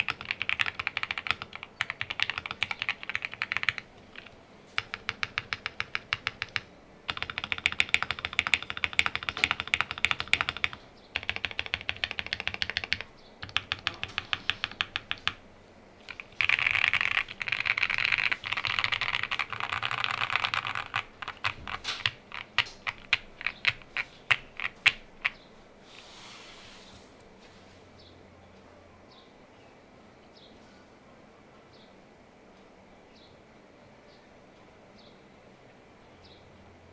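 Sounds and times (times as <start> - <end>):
mechanical keyboard typing: 0.0 - 15.4, 16.1 - 25.4.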